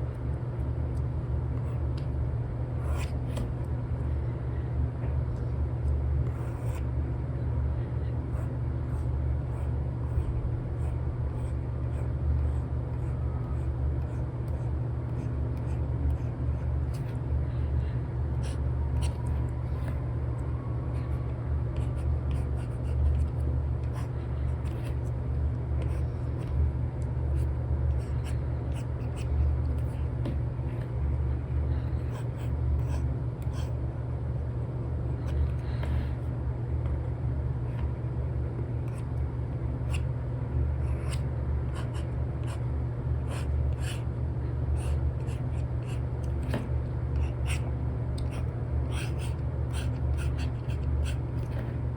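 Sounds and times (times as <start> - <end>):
steady low hum: 0.0 - 51.9
stylus scratching and tapping screen: 2.8 - 3.5, 6.2 - 6.9, 8.3 - 17.2, 18.4 - 20.0, 21.0 - 25.1, 27.3 - 30.9, 32.0 - 33.8, 48.2 - 51.7.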